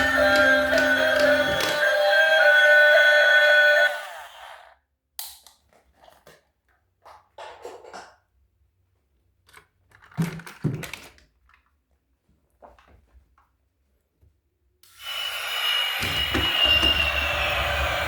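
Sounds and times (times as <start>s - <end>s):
toys and packaging rustling: 0.0s - 2.3s, 9.3s - 13.6s
background music: 0.0s - 4.0s.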